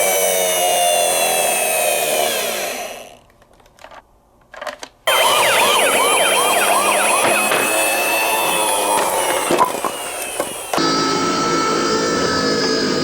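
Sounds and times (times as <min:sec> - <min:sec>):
toy siren: 0:05.1 - 0:11.9.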